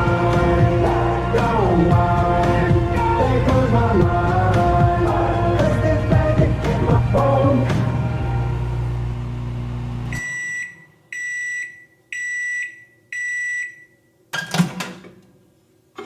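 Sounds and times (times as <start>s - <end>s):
microwave oven humming: 5.1s - 11.0s
microwave beeps: 10.0s - 14.2s.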